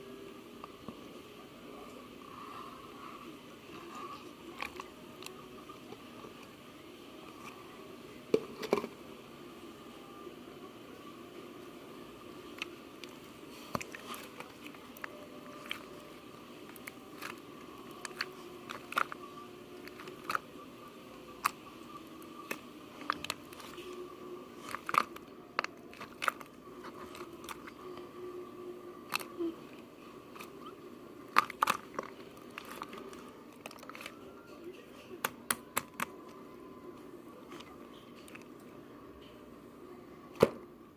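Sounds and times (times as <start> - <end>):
faint steady hum: 0.0 - 40.9
crunchy clicks and crackles: 3.6 - 6.6, 12.3 - 28.2, 29.0 - 34.6, 37.5 - 38.7.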